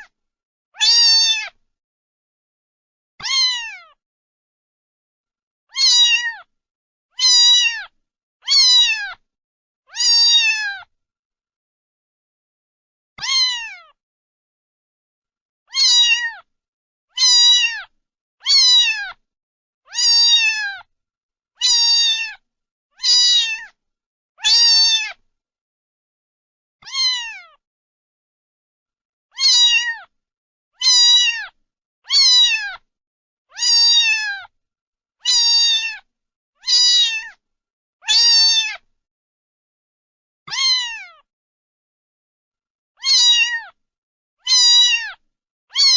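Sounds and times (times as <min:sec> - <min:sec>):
cat meowing: 0:00.8 - 0:01.6, 0:03.2 - 0:04.0, 0:05.7 - 0:06.5, 0:07.2 - 0:09.2, 0:09.9 - 0:10.9, 0:13.2 - 0:14.0, 0:15.7 - 0:16.5, 0:17.1 - 0:19.2, 0:19.9 - 0:20.9, 0:21.6 - 0:22.4, 0:23.0 - 0:23.8, 0:24.4 - 0:25.2, 0:26.8 - 0:27.6, 0:29.3 - 0:30.1, 0:30.8 - 0:32.8, 0:33.5 - 0:34.5, 0:35.2 - 0:37.4, 0:38.0 - 0:38.8, 0:40.5 - 0:41.3, 0:43.0 - 0:43.8, 0:44.4 - 0:45.9.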